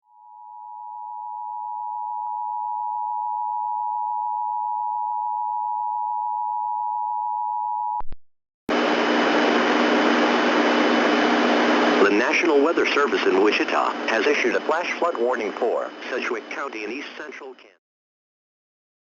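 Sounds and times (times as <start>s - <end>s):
static hiss with hum: 8.7s - 17.7s.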